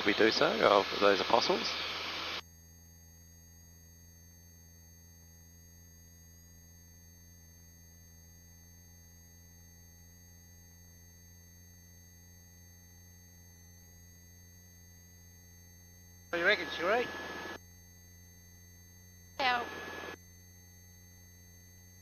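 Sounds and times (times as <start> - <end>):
faint electrical hum: 16.4 - 17.6, 19.4 - 20.2
open microphone rush: 16.4 - 17.6.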